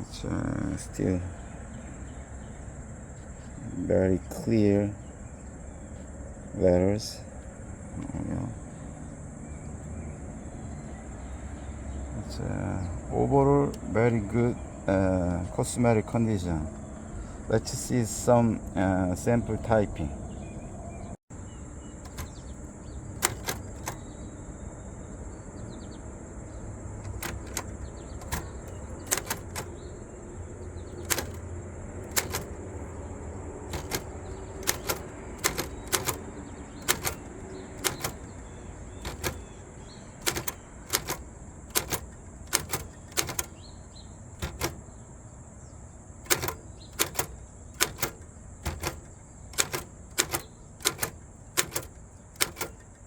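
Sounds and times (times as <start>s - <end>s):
typewriter key strikes: 22.0s - 24.1s, 27.0s - 29.8s, 31.0s - 32.6s, 33.7s - 39.5s, 40.2s - 43.6s, 44.4s - 44.8s, 46.2s - 53.0s.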